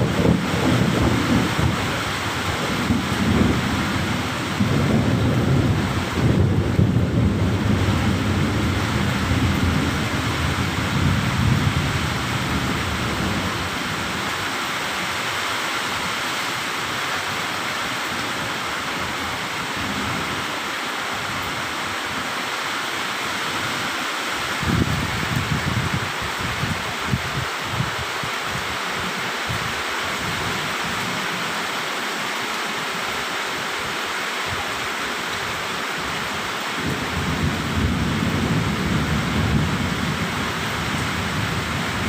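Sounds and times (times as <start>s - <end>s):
thunder rumbling: 0.0s - 14.3s, 36.8s - 42.0s
heavy rain falling: 0.0s - 42.0s.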